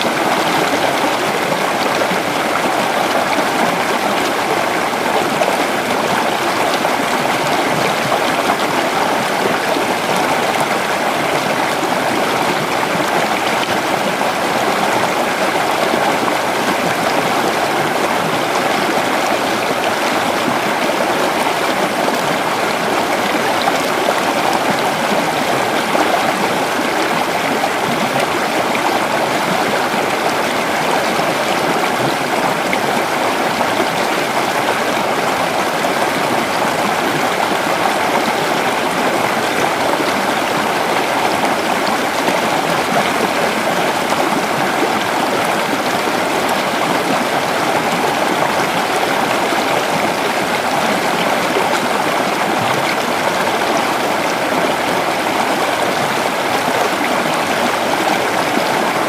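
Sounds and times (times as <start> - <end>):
creek water flowing over rocks: 0.0 - 59.0.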